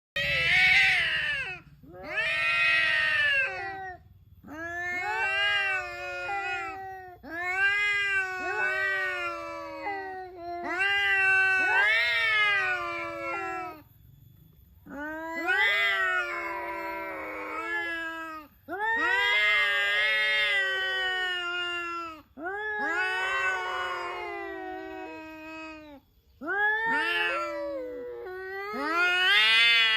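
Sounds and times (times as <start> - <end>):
cat yowling: 0.2 - 13.8, 14.9 - 29.9.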